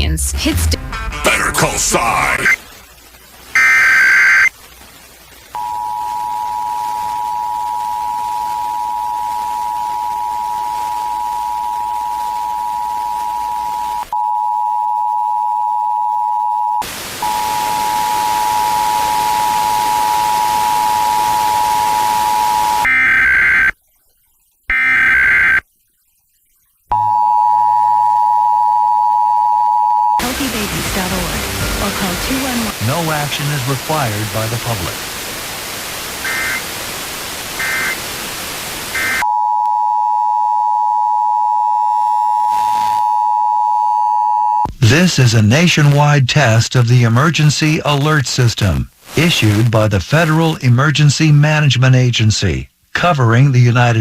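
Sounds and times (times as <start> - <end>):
radio hiss: 1.1 - 8.7, 16.8 - 23.0, 30.2 - 39.2, 42.4 - 43.0, 46.7 - 51.4
screeching digital data tones: 3.6 - 4.5, 24.7 - 25.6.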